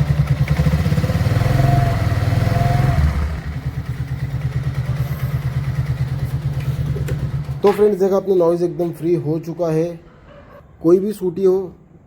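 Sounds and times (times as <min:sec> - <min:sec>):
scooter engine revving and idling: 0:00.0 - 0:07.6.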